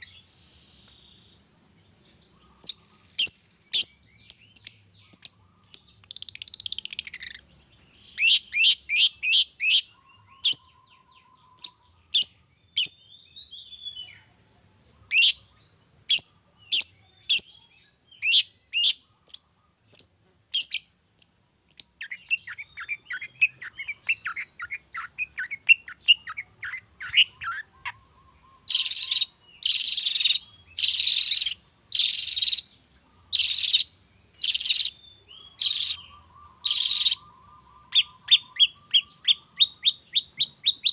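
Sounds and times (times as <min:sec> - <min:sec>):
bird trill: 0:00.0 - 0:14.3, 0:15.1 - 0:40.9
harsh rasping bird calls: 0:02.3 - 0:13.0, 0:15.1 - 0:40.9.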